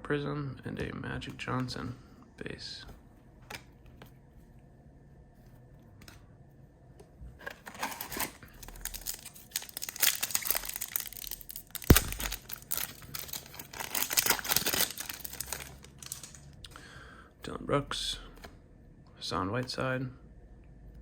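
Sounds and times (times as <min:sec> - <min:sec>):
card pack wrapper tearing and crinkling: 0:07.6 - 0:16.5.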